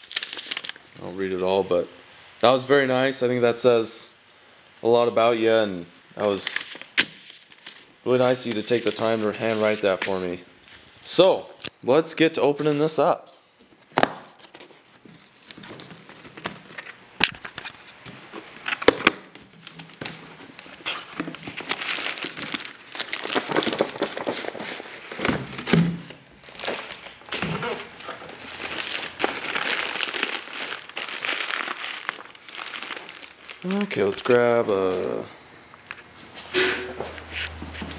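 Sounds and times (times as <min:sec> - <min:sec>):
packing material crinkling: 0:00.0 - 0:01.2, 0:06.2 - 0:10.3, 0:13.7 - 0:36.1.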